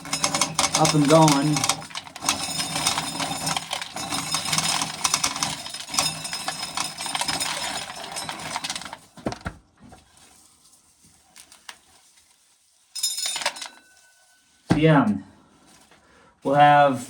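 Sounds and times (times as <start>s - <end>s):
corn sheller clattering rattle: 0.0s - 9.6s, 12.9s - 14.4s.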